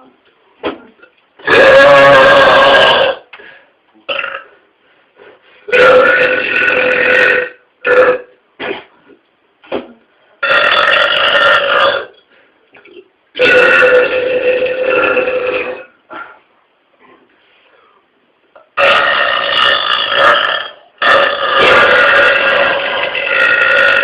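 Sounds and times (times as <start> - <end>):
man belching: 1.4 - 3.2, 4.1 - 4.5, 5.7 - 8.9, 10.4 - 12.1, 13.4 - 15.9, 18.8 - 24.0.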